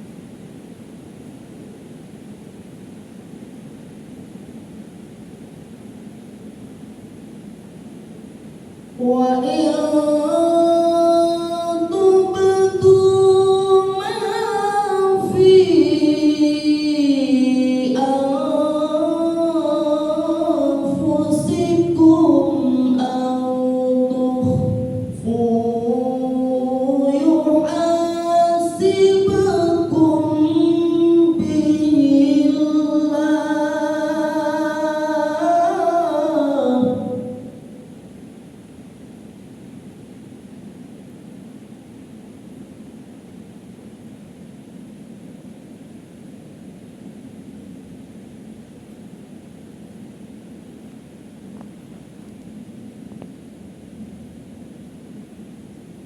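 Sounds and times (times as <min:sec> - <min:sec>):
person chanting melodic recitation: 0:09.0 - 0:37.8.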